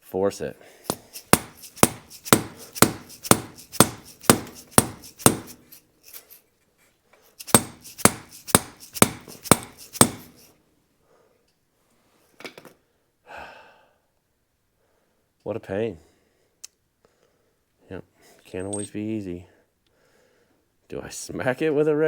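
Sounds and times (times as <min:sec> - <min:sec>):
hammer striking metal axle: 0:00.9 - 0:06.3, 0:07.4 - 0:10.5.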